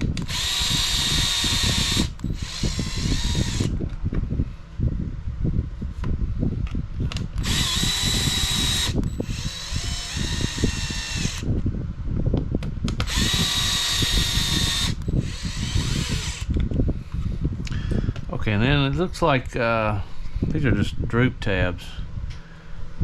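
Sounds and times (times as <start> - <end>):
electric screwdriver whine: 0.0 - 3.8, 7.3 - 11.5, 12.9 - 16.6.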